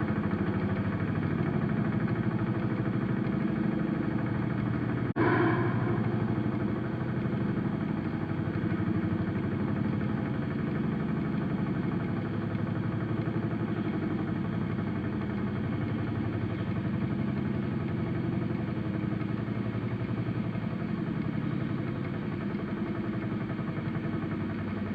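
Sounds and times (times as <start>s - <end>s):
air raid siren low growl: 5.1s - 9.5s.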